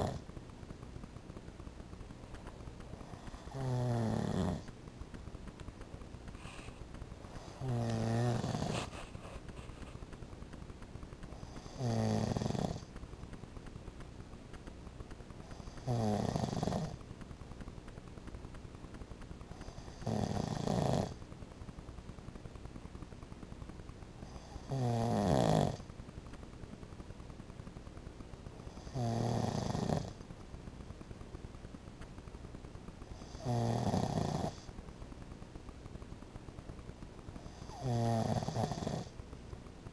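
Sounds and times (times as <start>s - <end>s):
man snoring: 0.0s - 0.2s, 3.1s - 4.7s, 7.6s - 8.9s, 11.6s - 12.9s, 15.8s - 17.0s, 19.7s - 21.2s, 24.4s - 25.8s, 28.8s - 30.2s, 33.3s - 34.6s, 37.6s - 39.1s.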